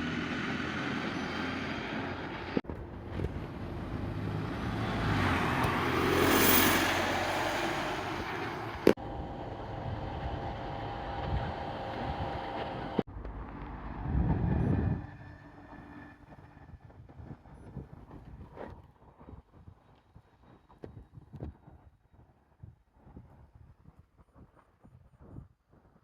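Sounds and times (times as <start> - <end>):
vehicle passing: 0.0 - 16.8
engines running: 0.0 - 16.9
low rumble: 2.5 - 18.5.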